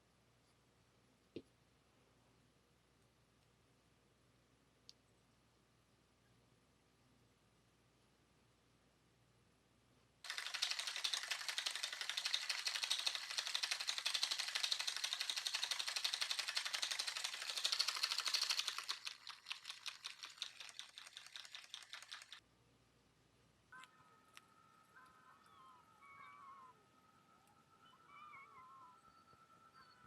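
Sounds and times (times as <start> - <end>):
rapid mechanical tapping: 10.3 - 22.4.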